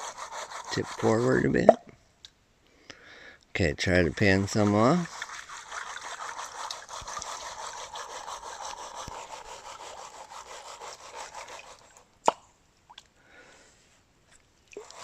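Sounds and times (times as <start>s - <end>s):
gravel scraping in a pan: 3.8s - 10.1s.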